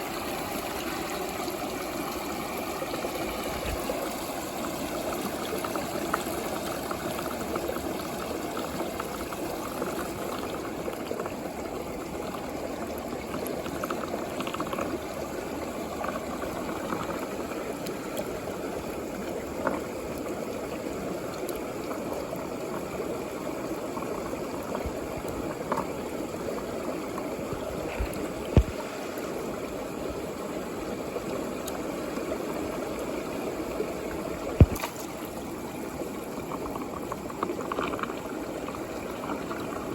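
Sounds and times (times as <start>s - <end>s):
water swirling in a plastic tube: 0.0s - 39.9s.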